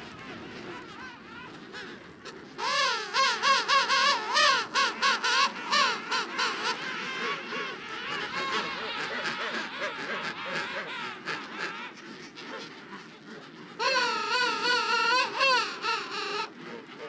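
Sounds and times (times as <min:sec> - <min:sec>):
penguins trumpeting calls: 0:00.0 - 0:17.0
close penguin long wavering call: 0:13.8 - 0:16.6.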